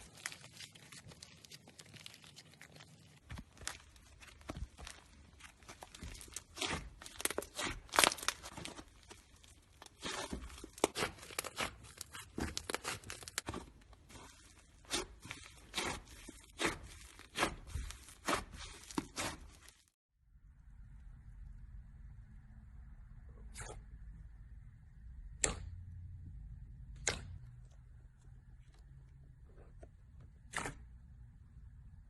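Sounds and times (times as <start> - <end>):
slime squished with crackling pops: 0.2 - 19.7.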